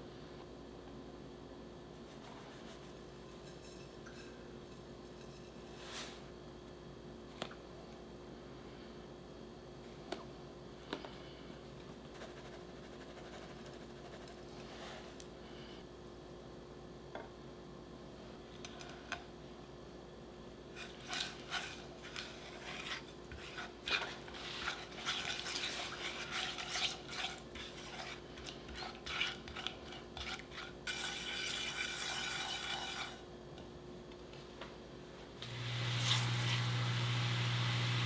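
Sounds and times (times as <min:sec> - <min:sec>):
utensil stirring in pot: 0:02.0 - 0:06.2, 0:20.7 - 0:33.3, 0:35.4 - 0:38.0.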